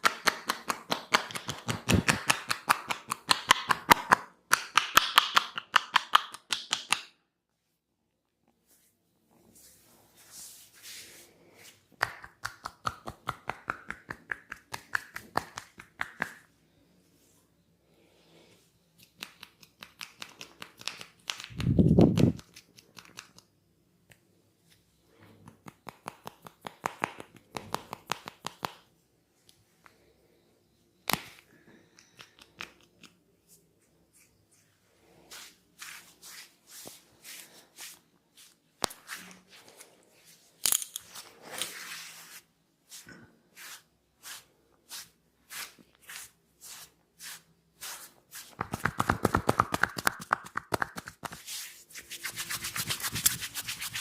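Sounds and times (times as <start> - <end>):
percussive massage taps and slaps: 0.0 - 7.2, 12.0 - 16.5, 19.1 - 22.4, 25.4 - 28.9, 48.5 - 51.4.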